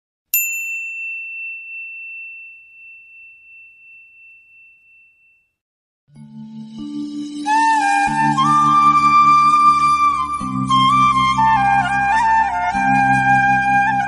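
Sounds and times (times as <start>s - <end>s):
high bell ding: 0.3s - 5.6s.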